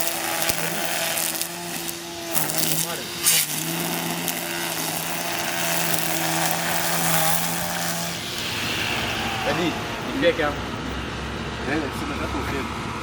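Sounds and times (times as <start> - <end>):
string trimmer running: 0.0 - 9.3.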